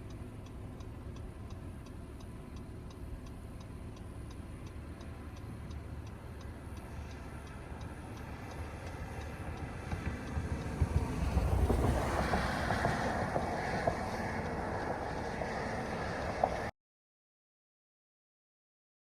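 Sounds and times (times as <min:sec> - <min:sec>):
light regular ticking: 0:00.0 - 0:12.4
road noise inside moving vehicle: 0:00.0 - 0:16.7
wind noise: 0:09.9 - 0:16.7.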